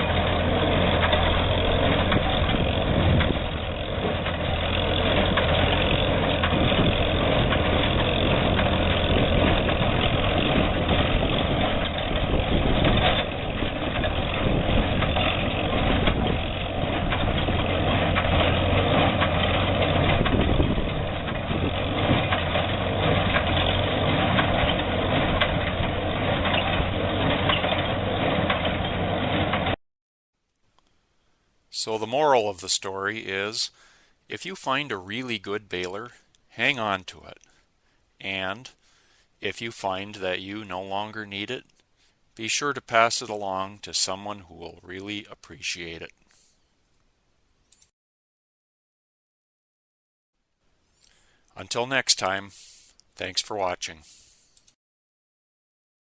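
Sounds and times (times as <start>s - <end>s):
hay baler machinery: 0.0s - 29.8s, 31.8s - 33.7s
tractor engine drone: 0.0s - 29.8s, 30.8s - 46.4s, 51.0s - 54.7s.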